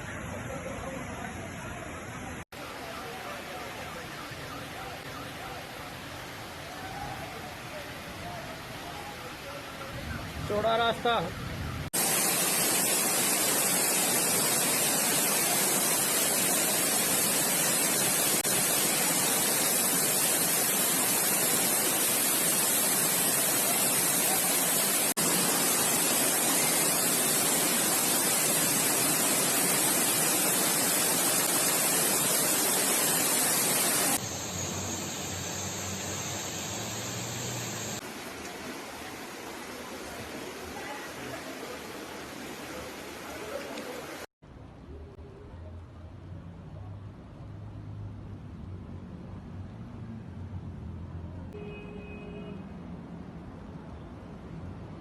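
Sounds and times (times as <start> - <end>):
rushing water in heavy rain: 11.9 - 44.3.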